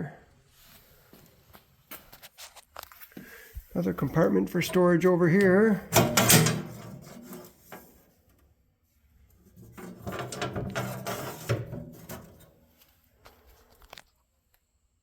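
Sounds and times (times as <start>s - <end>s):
rubbing and scraping: 5.9s - 8.1s, 9.4s - 12.6s.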